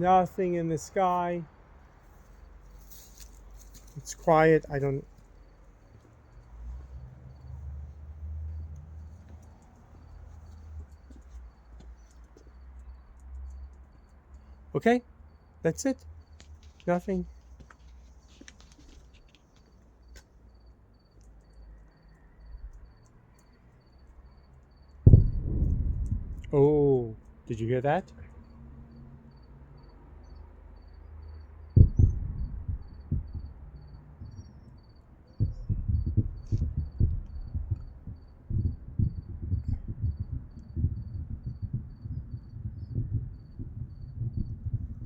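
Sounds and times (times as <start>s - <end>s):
cricket chirping: 0.0s - 45.0s
faint low rumble: 1.1s - 12.2s, 23.8s - 27.3s, 30.8s - 45.0s
low rumble: 25.0s - 26.6s, 31.8s - 34.4s, 35.4s - 45.0s.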